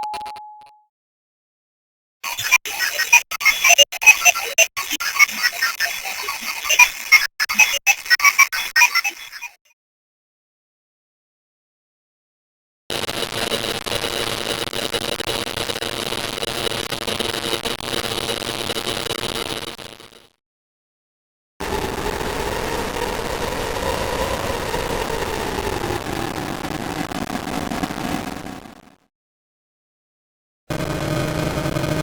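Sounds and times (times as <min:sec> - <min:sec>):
electronic chirps and blips: 0:00.0 - 0:00.8
crackling static with buzz: 0:12.9 - 0:20.1, 0:21.6 - 0:28.9, 0:30.7 - 0:32.0.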